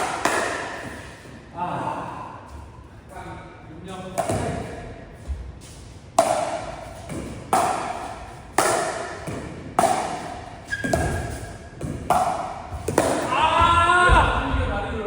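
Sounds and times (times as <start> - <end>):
paddles hitting ball: 0.0 - 1.3, 4.1 - 4.7, 6.1 - 14.4.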